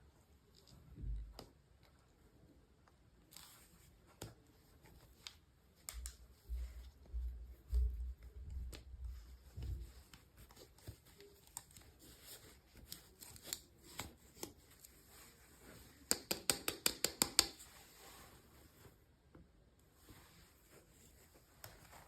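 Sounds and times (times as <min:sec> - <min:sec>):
plastic clicks and taps: 0:16.0 - 0:17.6.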